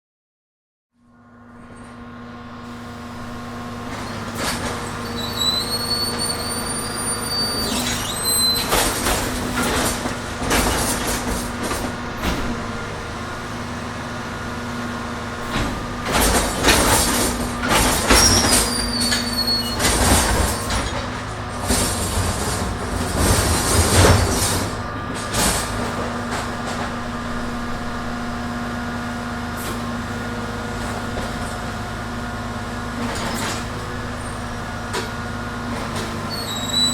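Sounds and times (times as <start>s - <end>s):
garbage truck engine running: 1.1s - 36.9s
bins clattering and banging: 3.8s - 14.2s, 15.4s - 28.5s, 29.6s - 32.1s, 33.0s - 36.9s
brief high squeals: 4.8s - 8.8s, 18.0s - 20.9s, 36.3s - 36.9s.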